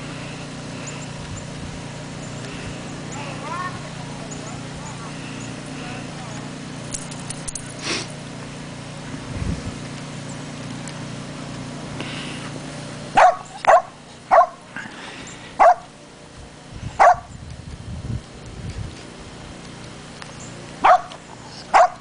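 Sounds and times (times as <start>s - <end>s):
dog barking: 13.2s - 14.6s, 15.6s - 15.9s, 17.0s - 17.3s, 20.8s - 21.1s, 21.7s - 22.0s.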